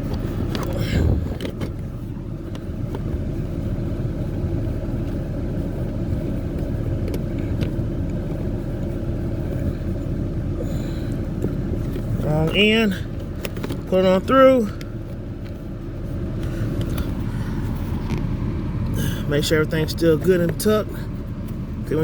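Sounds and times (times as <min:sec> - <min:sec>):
low vehicle rumble: 0:00.0 - 0:22.0.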